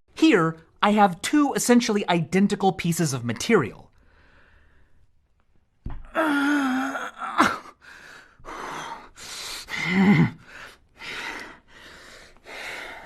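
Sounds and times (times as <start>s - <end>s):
person crying out: 6.1s - 7.7s.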